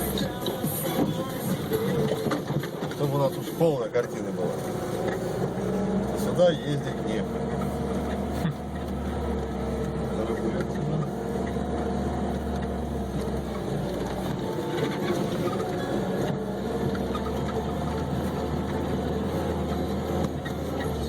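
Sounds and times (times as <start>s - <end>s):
car engine and road noise: 0.0s - 21.0s.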